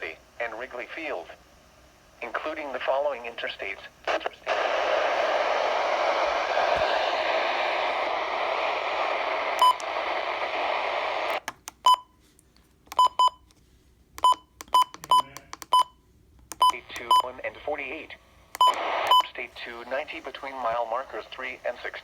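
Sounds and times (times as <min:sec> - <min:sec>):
radio static hiss: 0:00.0 - 0:11.4, 0:16.7 - 0:22.0
interference beeping blips: 0:09.6 - 0:09.9.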